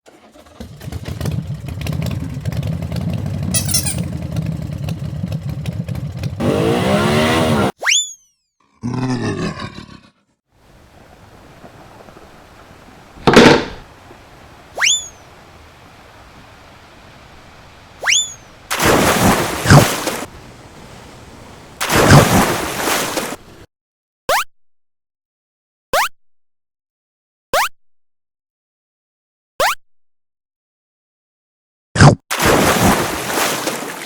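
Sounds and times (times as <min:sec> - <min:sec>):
cartoon rumbling motor: 0:00.2 - 0:07.8
cartoon swoosh: 0:07.6 - 0:08.2, 0:14.8 - 0:15.2, 0:18.0 - 0:18.5
cartoon rising pop: 0:14.8 - 0:15.1.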